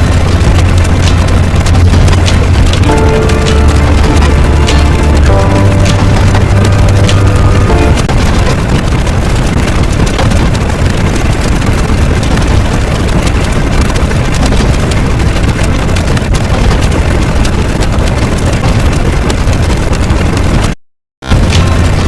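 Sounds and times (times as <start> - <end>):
loud low rumbling: 0.0 - 12.9, 21.2 - 22.0.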